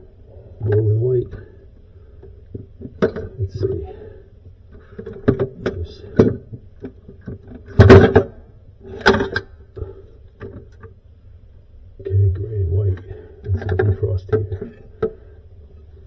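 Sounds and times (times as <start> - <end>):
faint steady hum: 0.0 - 16.0
knocks and clatters: 5.0 - 8.4.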